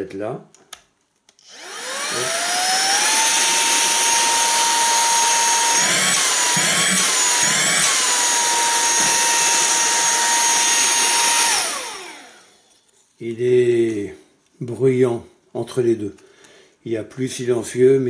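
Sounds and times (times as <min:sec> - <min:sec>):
handheld vacuum cleaner whine: 0:01.4 - 0:12.9.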